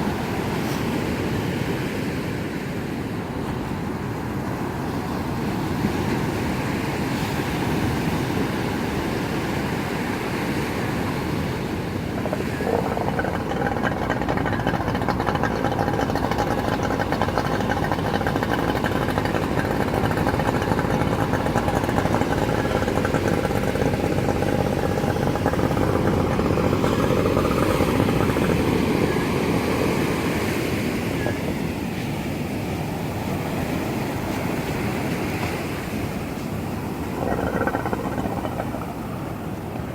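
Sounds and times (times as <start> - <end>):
wind: 0.0 - 39.9
motor engine running: 12.0 - 31.4, 36.3 - 39.9.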